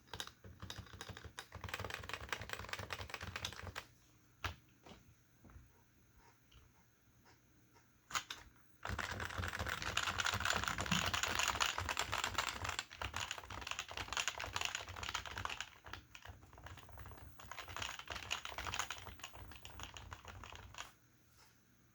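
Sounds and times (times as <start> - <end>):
fast typing on keyboard: 0.0 - 4.6, 8.1 - 20.9.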